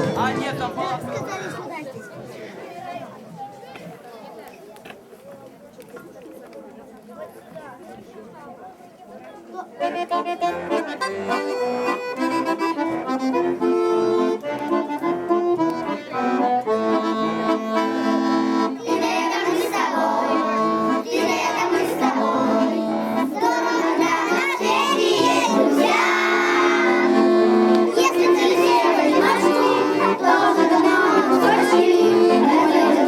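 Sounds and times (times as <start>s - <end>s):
children singing: 0.0s - 1.6s, 18.7s - 33.0s
held instrumental notes: 0.0s - 2.0s, 9.8s - 33.0s.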